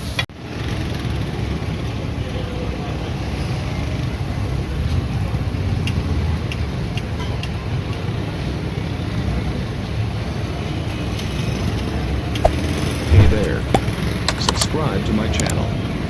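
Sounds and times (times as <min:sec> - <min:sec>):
traffic rumble: 0:12.3 - 0:15.6
sharp clicks: 0:12.5 - 0:14.8.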